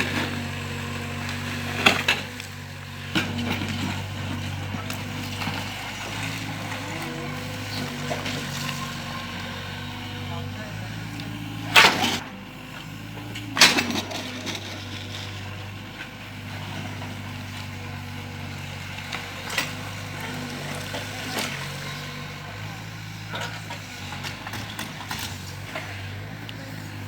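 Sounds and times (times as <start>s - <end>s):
excavator engine running: 0.0s - 27.0s.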